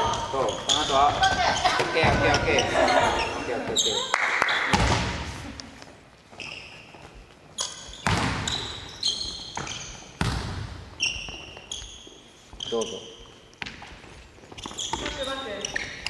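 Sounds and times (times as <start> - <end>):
basketball bouncing on gym court: 0.0 - 2.7, 4.7 - 5.4, 7.6 - 11.9
sneaker squeaks: 0.0 - 4.1, 5.9 - 16.0.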